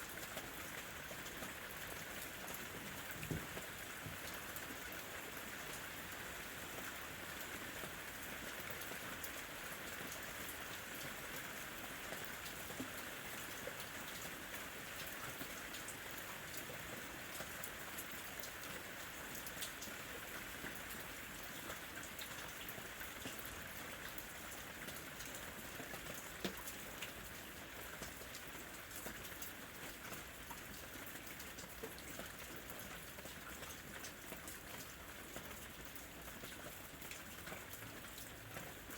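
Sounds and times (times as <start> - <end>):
raindrops ticking on a surface: 0.0 - 38.9
steady rain falling: 0.0 - 38.9.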